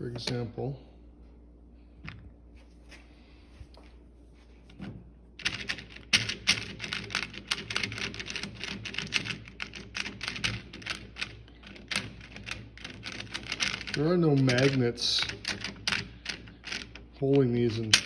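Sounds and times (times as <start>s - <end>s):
sockets rattling in a tray: 5.4s - 16.9s.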